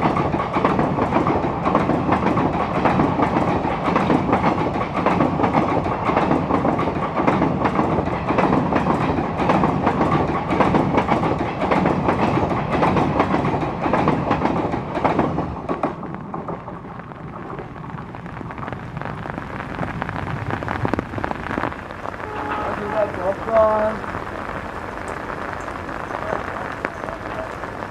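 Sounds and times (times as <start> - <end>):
train wheels clattering: 0.0 - 17.0
steady rain: 0.0 - 27.9.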